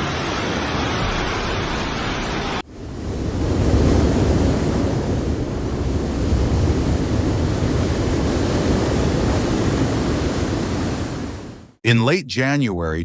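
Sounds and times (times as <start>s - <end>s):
storm wind and water rushing: 0.0s - 11.8s
wind buffeting microphone: 2.7s - 11.4s.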